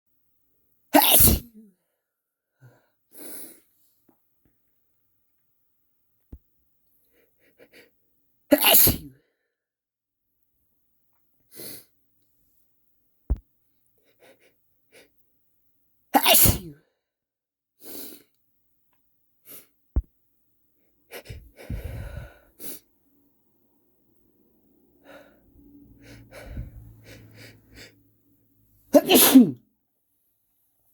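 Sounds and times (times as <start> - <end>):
man sneezing loudly: 1.0 - 1.6, 8.5 - 9.1, 16.2 - 16.8, 29.0 - 29.6.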